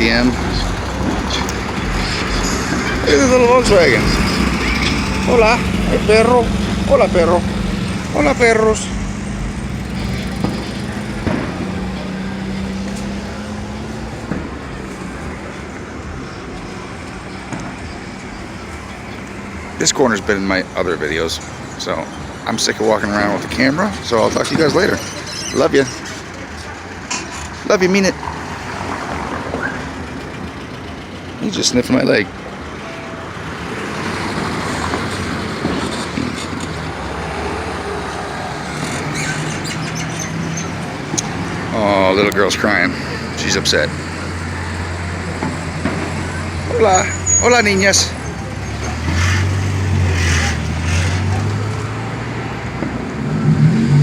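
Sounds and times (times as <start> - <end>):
low engine hum: 0.0 - 19.8
street traffic noise: 0.0 - 54.0
vehicle engine humming: 0.0 - 54.0.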